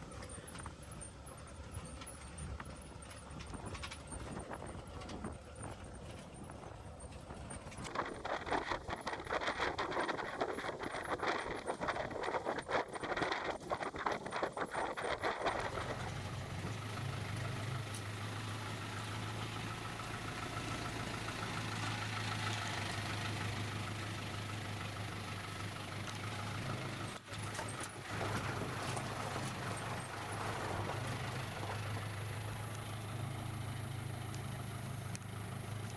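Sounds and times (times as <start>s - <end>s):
low engine hum: 0.0s - 35.9s
rapid irregular clattering: 7.5s - 16.1s.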